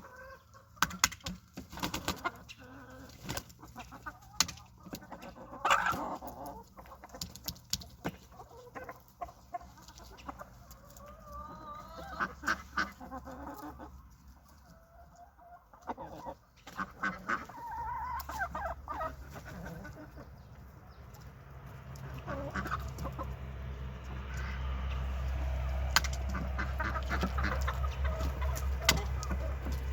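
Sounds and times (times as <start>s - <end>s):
chickens clucking: 0.0s - 29.9s.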